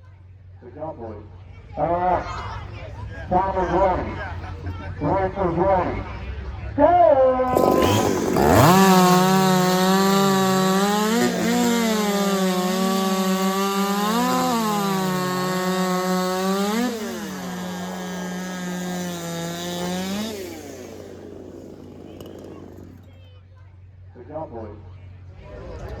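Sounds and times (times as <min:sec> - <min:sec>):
chainsaw sawing through log: 0:07.5 - 0:23.1.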